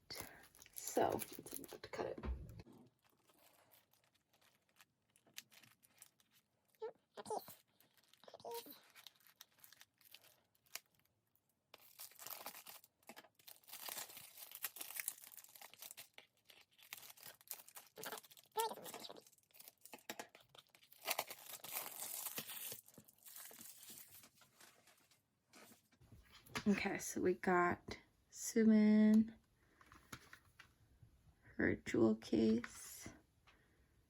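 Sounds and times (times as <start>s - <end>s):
plastic wrap crinkling and tearing: 2.8s - 25.2s.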